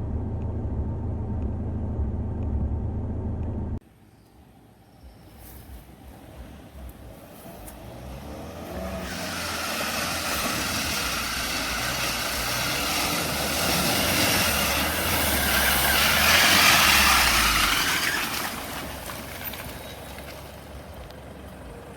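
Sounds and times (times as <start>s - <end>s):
pickup engine under load: 6.2s - 21.9s.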